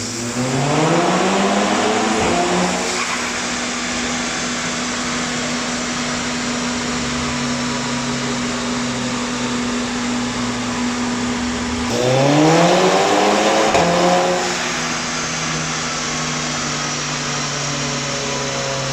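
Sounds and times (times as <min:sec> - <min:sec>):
loud rushing noise: 0:00.0 - 0:04.6, 0:11.4 - 0:16.4
car engine idling and revving: 0:00.0 - 0:18.9.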